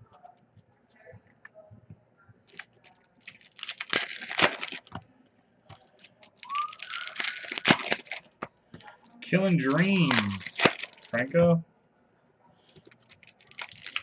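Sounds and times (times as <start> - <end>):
foil wrapper tearing and crinkling: 2.5 - 4.9, 6.3 - 8.3, 9.6 - 11.3, 12.8 - 14.0.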